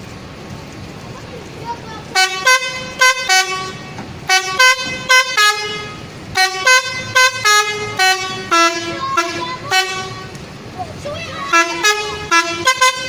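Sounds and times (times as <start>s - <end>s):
bus horn playing a tune: 2.1s - 10.4s, 11.4s - 13.0s.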